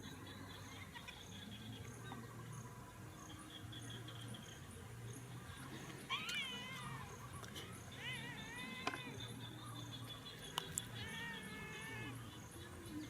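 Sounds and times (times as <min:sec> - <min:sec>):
insects chirping: 0:00.0 - 0:13.0
young monkey crying: 0:06.1 - 0:09.5, 0:10.7 - 0:12.4.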